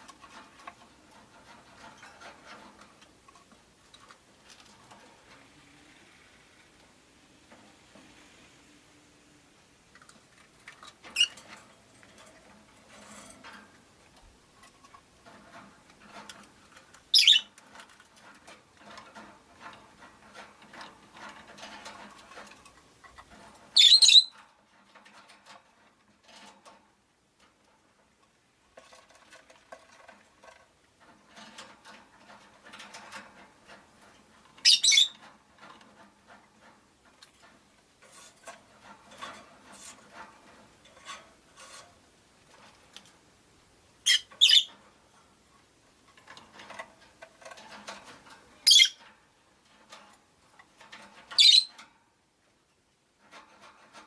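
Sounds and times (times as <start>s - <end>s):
faint rustling and clicking: 0.0s - 54.0s
lovebirds shrill calls: 17.1s - 17.5s, 23.8s - 24.3s, 34.6s - 35.2s, 44.1s - 44.7s, 48.6s - 49.0s, 51.4s - 51.7s.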